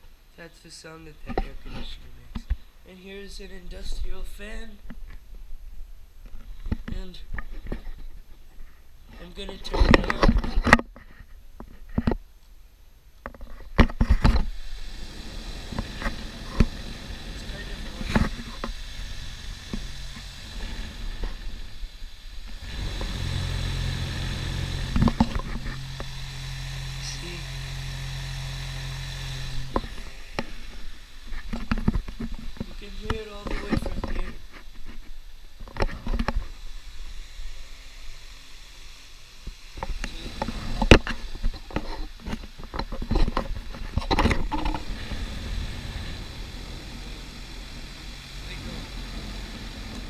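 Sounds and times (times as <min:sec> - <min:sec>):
electric fan humming: 0:13.7 - 0:50.0
sharp clicks and knocks: 0:24.1 - 0:27.0, 0:29.1 - 0:36.5, 0:39.4 - 0:50.0.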